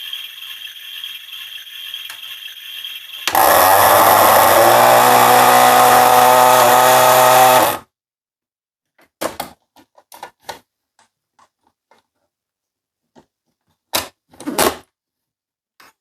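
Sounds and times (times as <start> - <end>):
small electric motor buzzing: 1.9 - 7.8.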